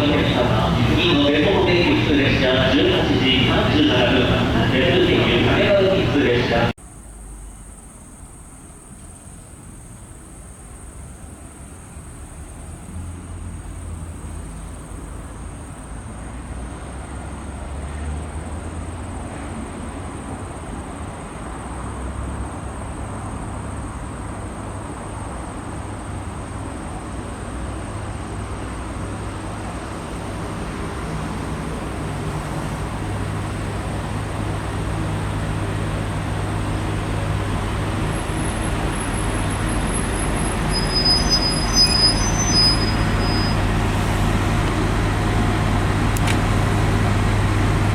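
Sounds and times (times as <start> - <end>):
diesel railcar engine hum: 0.0 - 47.9
short high-pitched squeals: 38.0 - 43.8.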